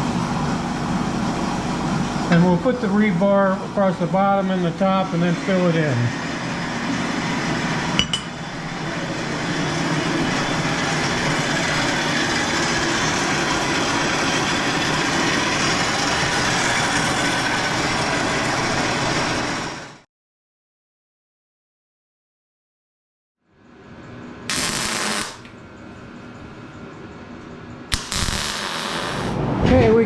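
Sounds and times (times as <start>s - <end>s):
arc welding hiss: 24.5s - 25.5s, 27.9s - 29.4s.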